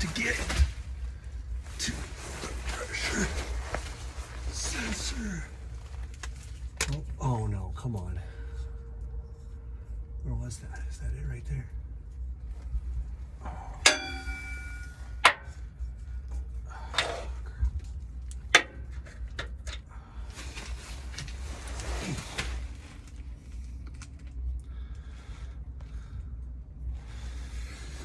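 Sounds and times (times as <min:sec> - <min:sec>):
rustling: 0:00.0 - 0:11.0, 0:11.7 - 0:24.6
steady low rumble: 0:00.0 - 0:28.0
metal clinks and knocks: 0:13.7 - 0:17.3.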